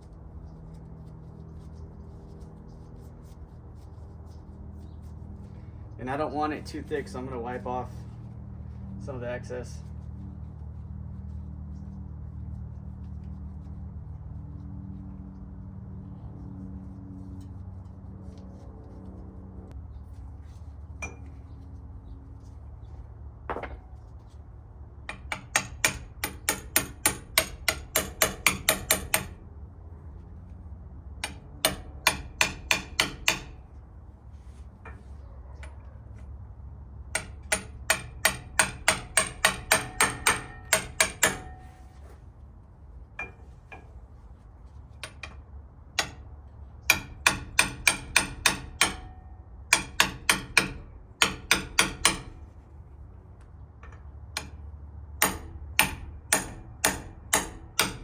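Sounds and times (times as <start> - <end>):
hammer striking metal: 25.1 - 29.4, 31.2 - 33.6, 37.2 - 41.8, 46.9 - 52.4, 55.2 - 58.0.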